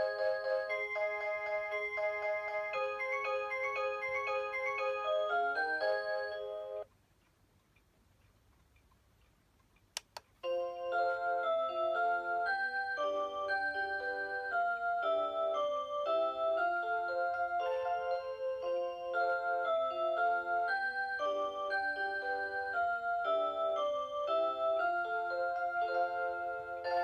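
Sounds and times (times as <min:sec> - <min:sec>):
alarm clock chime melody: 0:00.0 - 0:06.9, 0:10.4 - 0:27.0
sharp clicks: 0:07.2 - 0:10.4.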